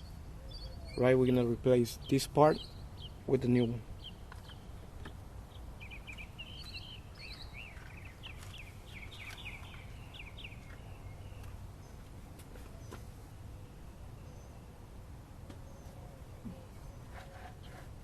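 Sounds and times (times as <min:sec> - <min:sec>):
birds chirping and singing: 0:00.0 - 0:04.7, 0:05.4 - 0:12.1, 0:15.6 - 0:18.0.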